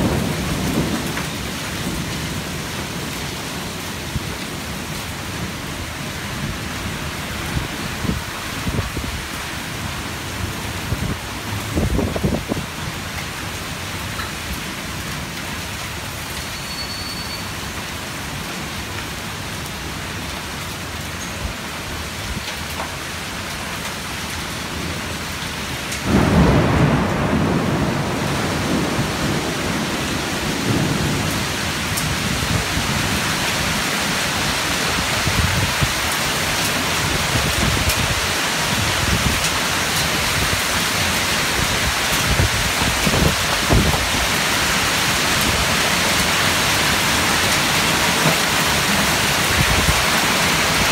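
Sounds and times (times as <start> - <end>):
loud low thunder crash: 26.1 - 29.7.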